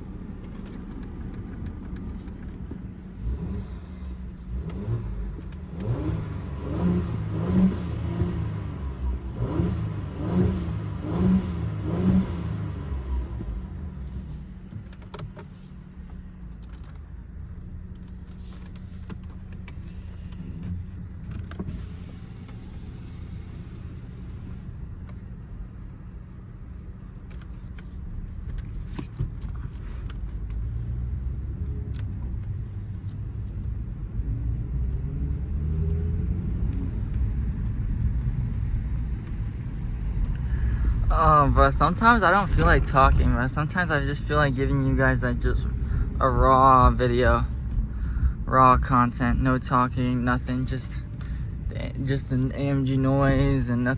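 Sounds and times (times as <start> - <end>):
car engine drone from cabin: 0.0 - 53.9
road noise: 0.0 - 53.9.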